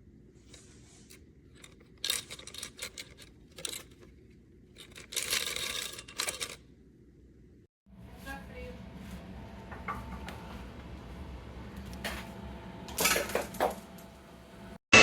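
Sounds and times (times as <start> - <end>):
parts clicking and rustling: 0.4 - 6.8.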